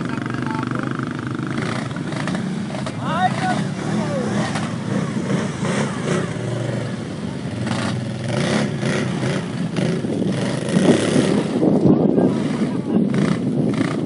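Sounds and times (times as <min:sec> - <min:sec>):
atv engine running: 0:00.0 - 0:14.0.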